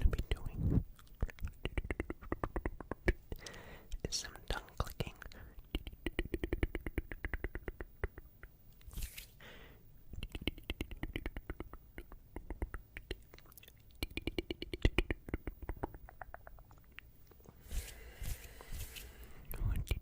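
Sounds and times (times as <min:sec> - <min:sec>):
wet tongue clicks: 0:00.1 - 0:04.0, 0:05.5 - 0:08.9, 0:10.1 - 0:17.4.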